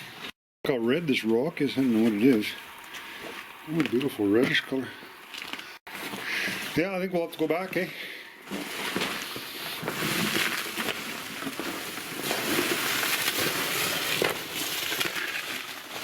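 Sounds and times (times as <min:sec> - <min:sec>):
footsteps crunching on gravel: 0:01.2 - 0:06.3, 0:08.4 - 0:16.0
small scrapes and clicks: 0:08.9 - 0:16.0.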